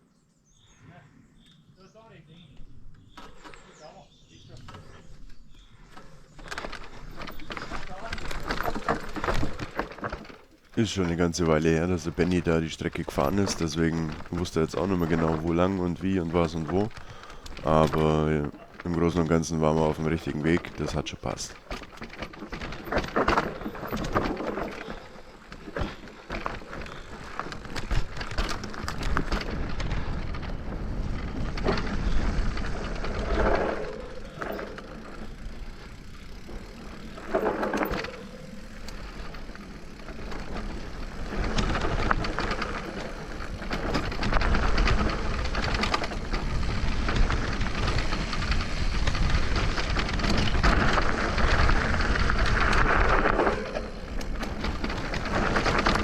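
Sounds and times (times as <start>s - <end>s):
bike rattling and knocking: 5.9s - 56.0s
tyres crunching over gravel: 6.5s - 56.0s
wind buffeting microphone: 40.7s - 56.0s.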